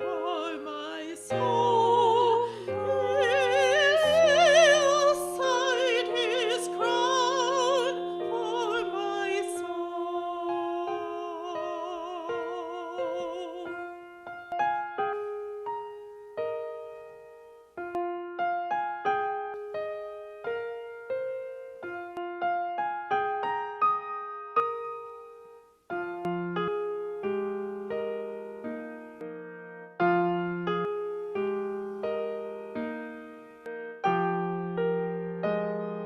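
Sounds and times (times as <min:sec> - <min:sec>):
person singing with vibrato: 0:00.0 - 0:14.2
gentle piano: 0:00.0 - 0:36.0.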